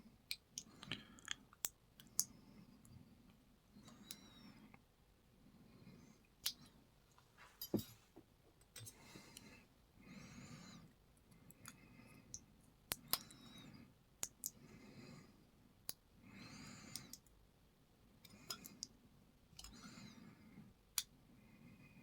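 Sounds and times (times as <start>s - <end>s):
soft slow breathing: 8.8s - 12.4s, 14.6s - 15.5s, 16.2s - 17.2s.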